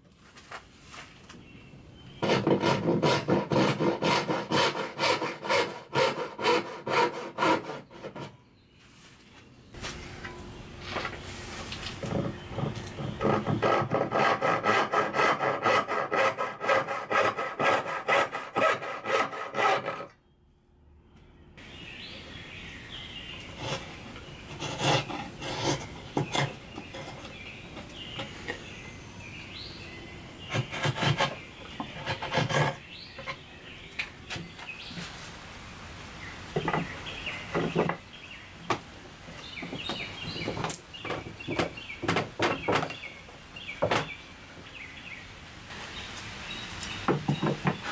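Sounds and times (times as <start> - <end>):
hand tool stroking on wood: 12.0 - 20.1, 23.6 - 27.2, 30.5 - 33.3.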